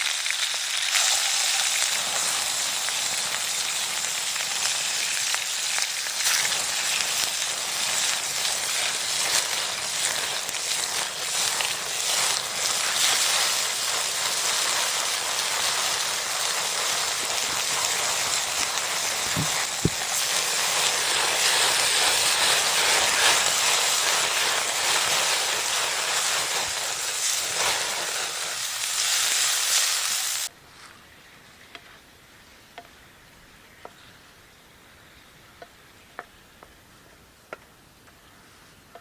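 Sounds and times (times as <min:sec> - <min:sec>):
meat sizzling in hot oil: 0:00.0 - 0:30.5.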